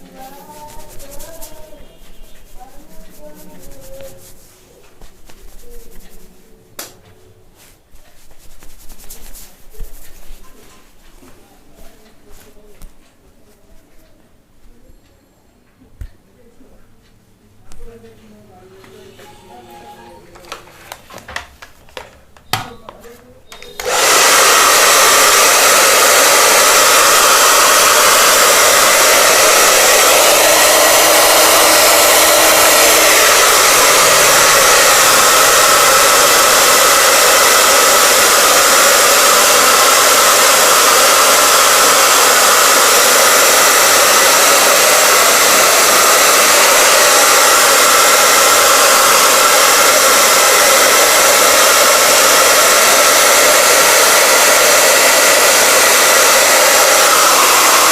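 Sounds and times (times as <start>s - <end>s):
hair dryer blowing: 0.0s - 1.8s, 23.5s - 57.9s.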